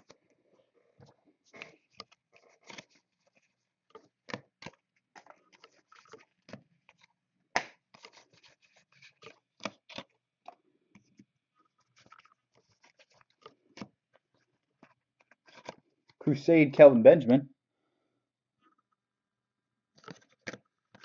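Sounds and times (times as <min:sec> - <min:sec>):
cards and wrappers crinkling: 0:01.0 - 0:15.8, 0:20.0 - 0:21.0
card snap: 0:07.6 - 0:07.8.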